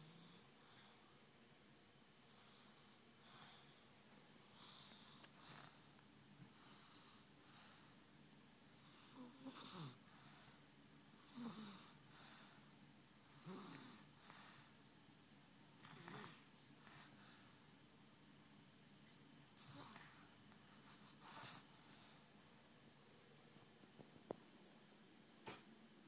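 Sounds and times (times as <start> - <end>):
child snoring softly: 0.0 - 1.2, 2.2 - 5.9, 8.7 - 10.6, 11.2 - 12.6, 13.3 - 14.8, 15.8 - 17.5, 19.6 - 21.7.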